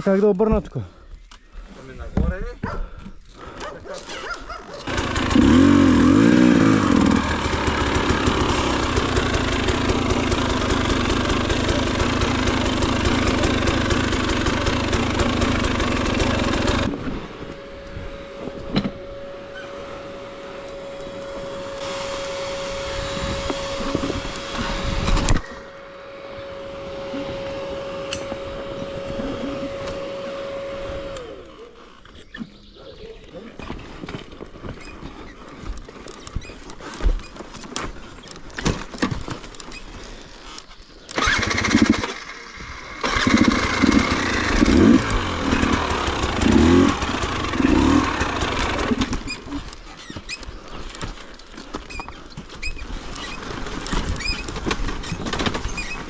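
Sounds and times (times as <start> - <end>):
steady engine hum: 4.5 - 32.0, 39.5 - 51.5
motorcycle engine revving: 4.8 - 31.8, 41.1 - 49.8.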